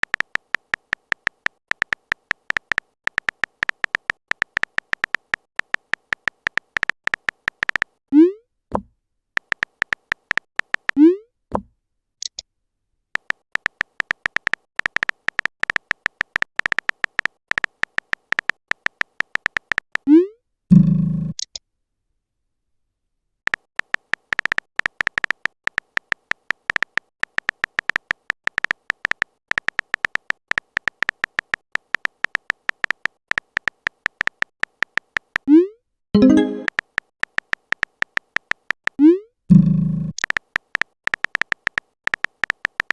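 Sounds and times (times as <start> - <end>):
rapid electronic typing beeps: 0.0 - 7.9, 9.4 - 11.0, 13.2 - 19.9, 23.5 - 35.5, 40.2 - 42.9
rising notification blips: 36.2 - 36.8.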